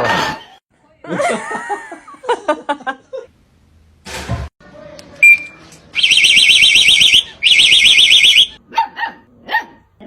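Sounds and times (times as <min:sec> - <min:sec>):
electronic alarm warbling: 0:06.0 - 0:08.6
dog barking: 0:08.7 - 0:09.9.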